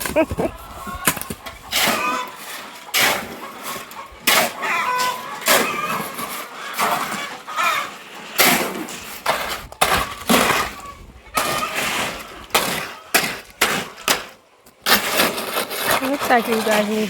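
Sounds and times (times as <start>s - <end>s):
shovels scraping concrete mix: 0.0s - 17.0s.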